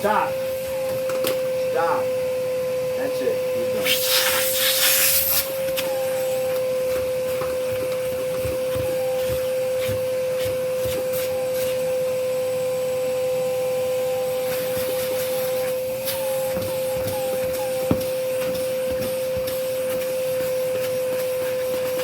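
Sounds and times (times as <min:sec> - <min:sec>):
vacuum cleaner whine: 0:00.0 - 0:22.0
nozzle rubbing and tapping: 0:14.6 - 0:22.0.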